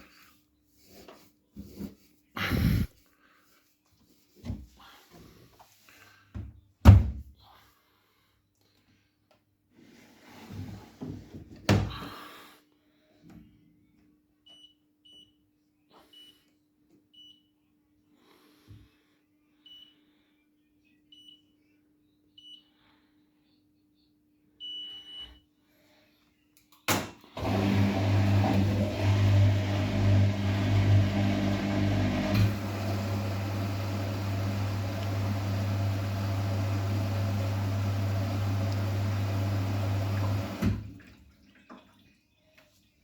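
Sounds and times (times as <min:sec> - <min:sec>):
washing machine hum: 0:27.4 - 0:42.2.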